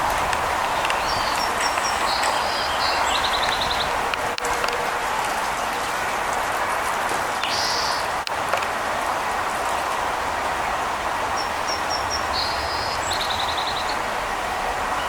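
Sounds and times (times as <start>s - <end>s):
steady rushing noise: 0.0s - 15.0s
small birds chirping: 0.6s - 4.0s.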